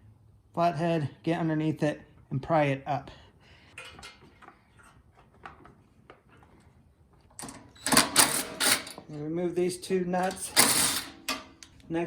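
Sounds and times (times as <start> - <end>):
metal tools clattering: 7.4 - 9.3, 10.2 - 11.8.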